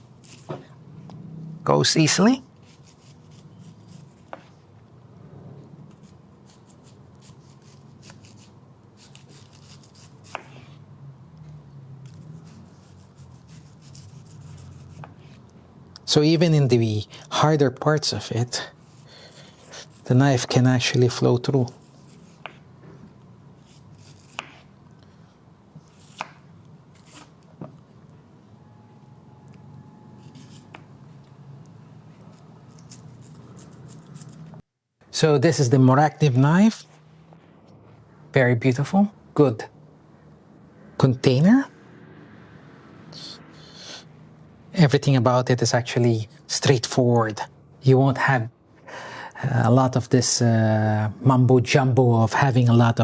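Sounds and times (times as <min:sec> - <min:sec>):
knife slicing mango: 0:05.9 - 0:10.9, 0:23.6 - 0:24.8, 0:25.8 - 0:27.4, 0:30.2 - 0:31.0.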